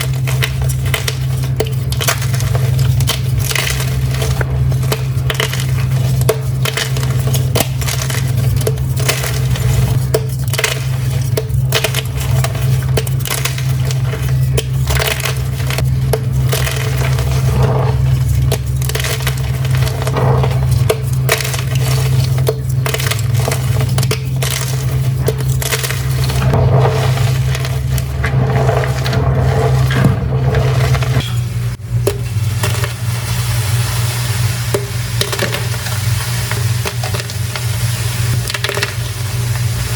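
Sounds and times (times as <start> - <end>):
chalk being crushed: 0.0 - 31.3
steady low hum: 0.0 - 38.5.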